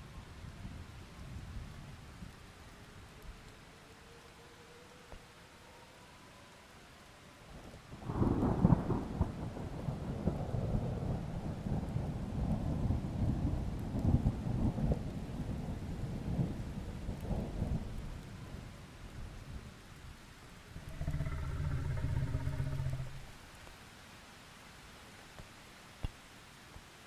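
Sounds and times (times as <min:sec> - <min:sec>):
thunder crack and rumble: 0:08.0 - 0:18.6, 0:20.8 - 0:23.3.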